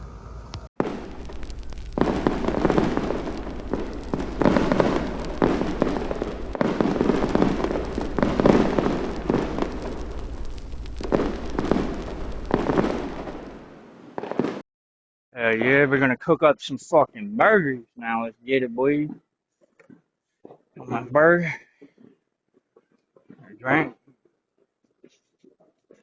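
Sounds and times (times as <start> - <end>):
fireworks crackling and popping: 0.8 - 14.6.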